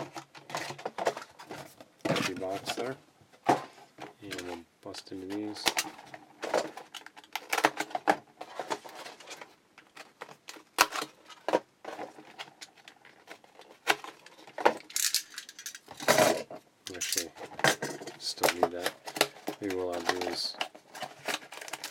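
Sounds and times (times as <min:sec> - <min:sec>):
card packaging crinkling and clicking: 0:04.1 - 0:16.1, 0:16.9 - 0:21.9.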